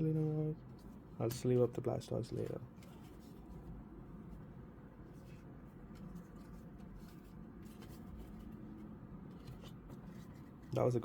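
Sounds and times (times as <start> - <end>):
low steady hum: 0.0 - 11.0
cards tapping and rustling: 0.8 - 3.7, 5.2 - 11.0.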